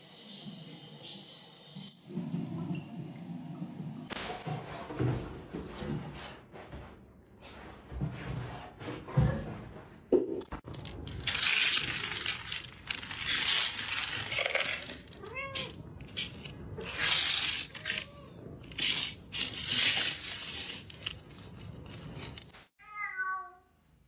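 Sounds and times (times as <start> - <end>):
cat meowing: 22.8 - 23.6.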